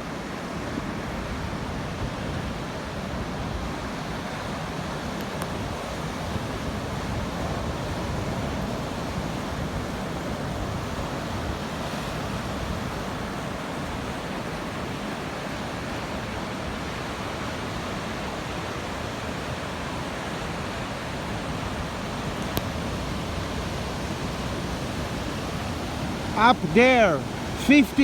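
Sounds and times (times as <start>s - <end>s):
heavy ocean surf roaring: 5.9s - 28.0s.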